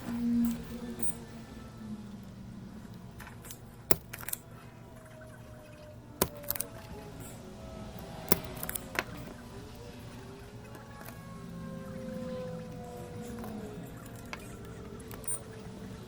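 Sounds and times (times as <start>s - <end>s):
small tools clicking and tapping: 3.9s - 4.4s, 6.2s - 6.7s, 8.3s - 9.1s, 15.1s - 15.5s.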